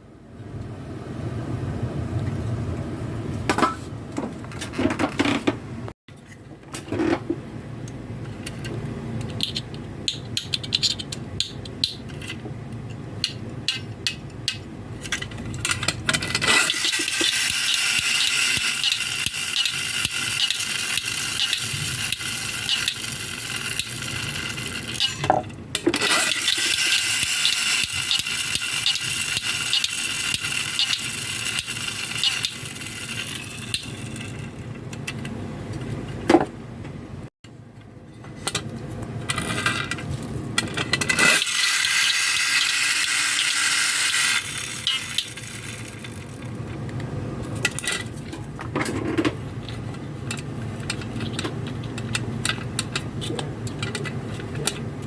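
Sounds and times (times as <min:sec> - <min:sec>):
steady rattling with clicks: 0:07.8 - 0:36.2, 0:38.5 - 0:55.0
metallic clinks of tin toy parts: 0:15.1 - 0:25.3, 0:26.0 - 0:34.5, 0:40.8 - 0:46.5.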